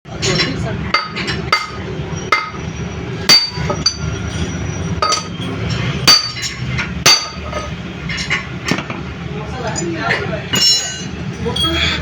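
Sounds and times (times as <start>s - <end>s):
hammer striking metal: 0.3s - 4.2s, 5.0s - 8.9s, 10.5s - 11.2s.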